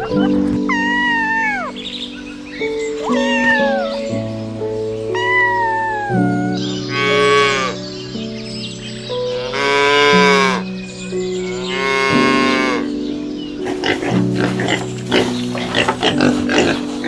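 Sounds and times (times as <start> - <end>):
background music with held notes: 0.0 - 17.0
cow mooing: 9.4 - 10.6, 11.6 - 12.9, 13.8 - 17.0.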